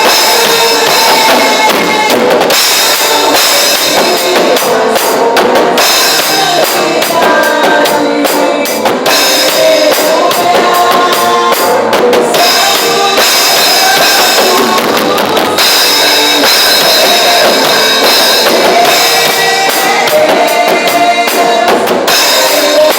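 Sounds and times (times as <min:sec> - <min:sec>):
band playing: 0:00.0 - 0:22.9
drum kit playing: 0:00.0 - 0:22.9.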